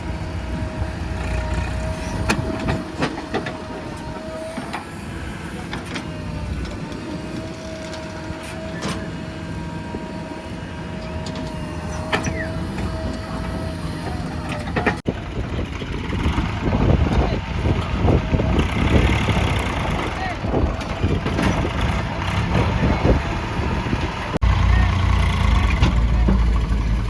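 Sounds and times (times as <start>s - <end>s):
rough rumbling and clatter: 0.0s - 4.6s, 11.1s - 27.0s
diesel earthmoving machinery running: 0.0s - 27.0s
steady machine whine: 0.0s - 27.0s.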